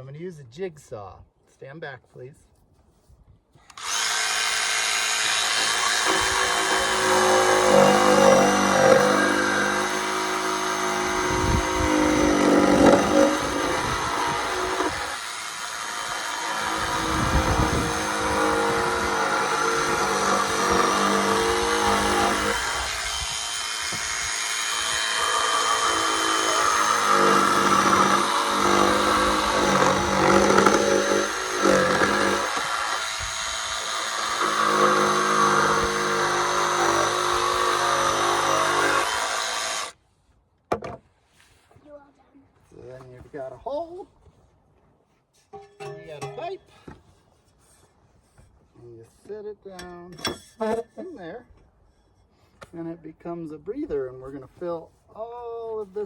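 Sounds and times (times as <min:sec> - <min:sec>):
electric jigsaw cutting wood: 0:03.7 - 0:40.0.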